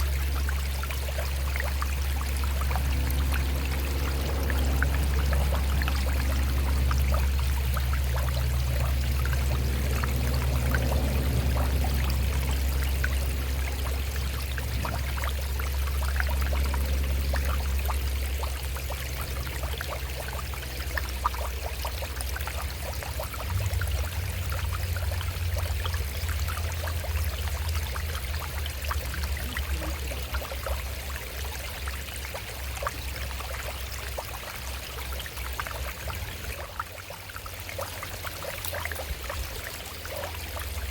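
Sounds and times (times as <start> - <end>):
low rumble: 0.0 - 31.1
stream running over rocks: 0.0 - 40.9.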